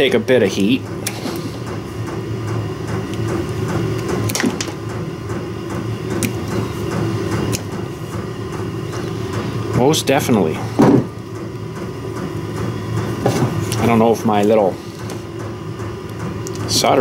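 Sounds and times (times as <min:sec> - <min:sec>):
machine humming: 0:00.0 - 0:17.0
sharp clicks and knocks: 0:01.0 - 0:07.9.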